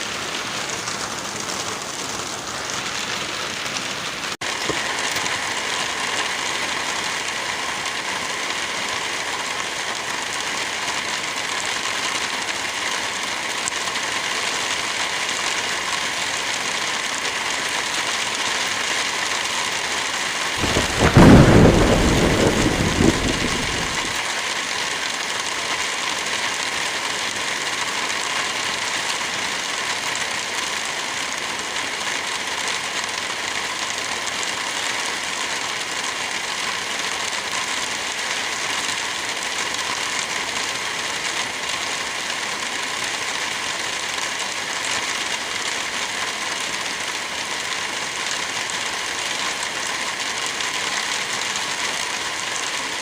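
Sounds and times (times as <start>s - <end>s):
light rain falling: 0.0s - 53.0s
wind through trees: 19.0s - 26.1s
loud low rumble: 20.6s - 24.2s.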